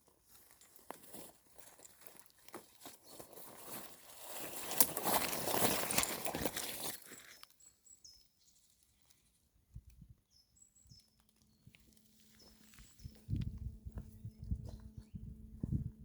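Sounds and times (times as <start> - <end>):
crinkling crackling rustle: 0.0 - 7.7, 8.4 - 13.4
faint high bird chirps: 7.2 - 9.3, 10.0 - 15.4.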